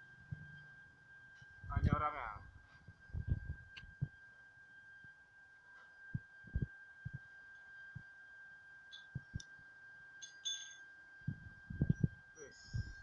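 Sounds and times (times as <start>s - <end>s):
soft low thumps: 2.8s - 4.2s, 6.1s - 7.2s, 11.3s - 13.0s.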